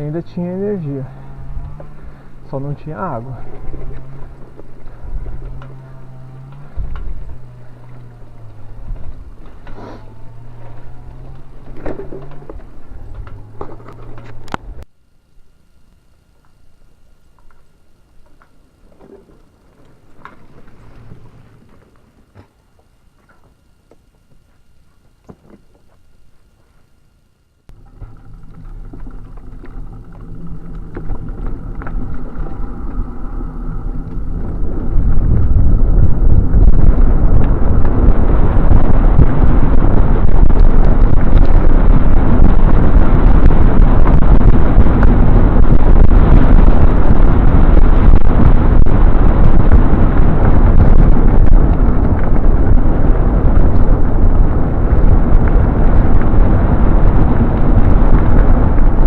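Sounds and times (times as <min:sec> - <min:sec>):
wind rumble buffeting microphone: 0:00.0 - 0:14.9, 0:27.7 - 0:59.0.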